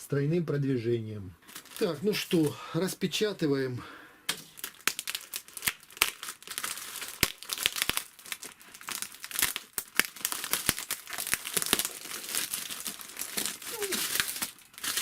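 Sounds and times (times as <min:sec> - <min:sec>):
packaging crinkling: 0:01.4 - 0:02.6, 0:04.3 - 0:15.0
wrapping tearing: 0:01.4 - 0:02.6, 0:04.3 - 0:15.0.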